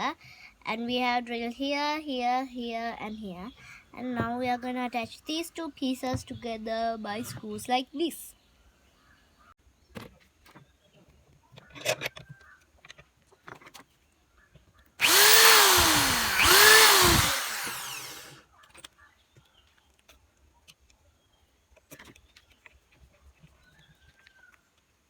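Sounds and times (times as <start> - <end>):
electric drill driving screws: 15.0 - 18.4.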